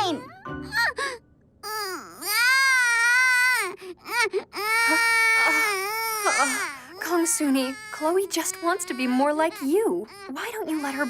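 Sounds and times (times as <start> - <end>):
toddler crying: 0.0 - 11.0.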